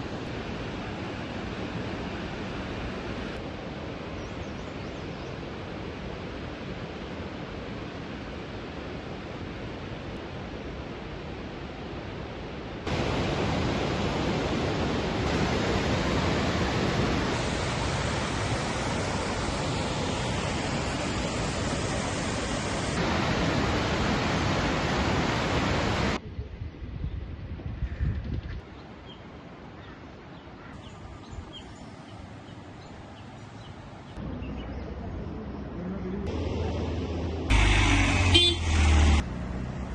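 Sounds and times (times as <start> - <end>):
waterfall roaring: 12.8 - 26.2.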